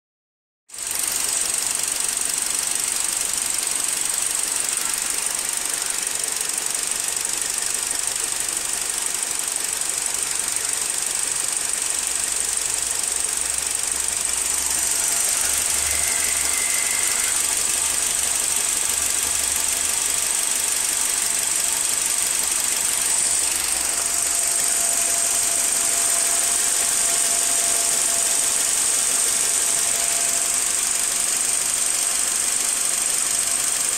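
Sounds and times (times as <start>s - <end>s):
car engine running steadily: 0.8s - 33.9s
high-pitched hiss: 14.0s - 33.8s.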